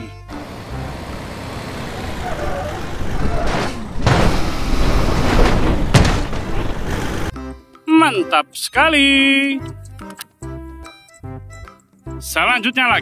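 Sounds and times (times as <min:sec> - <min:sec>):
rumbling vehicle noise: 0:00.0 - 0:07.3.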